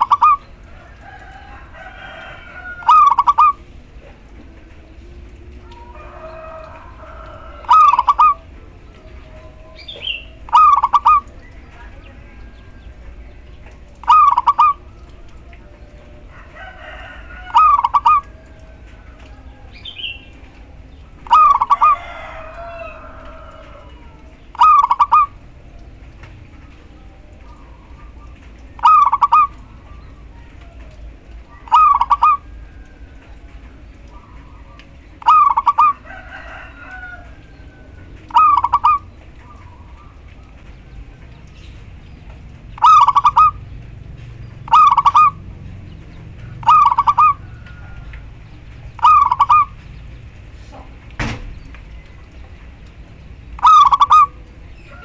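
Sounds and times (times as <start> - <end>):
rough bird calls: 0.0 - 3.6, 5.7 - 8.5, 9.7 - 13.0, 13.6 - 15.1, 21.2 - 25.4, 27.4 - 33.4, 34.1 - 40.7, 41.3 - 52.9, 53.5 - 55.0
dove calling: 0.0 - 55.0.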